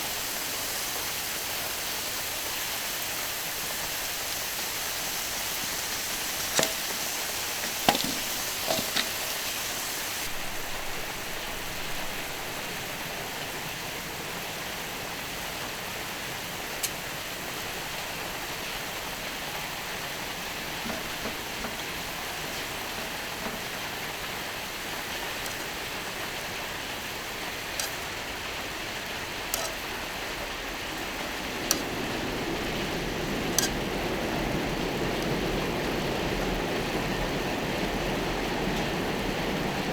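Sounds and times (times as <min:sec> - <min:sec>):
meat sizzling on griddle: 0:00.0 - 0:38.0
fire pops and crackles: 0:05.0 - 0:10.3, 0:19.6 - 0:28.4, 0:29.0 - 0:36.4.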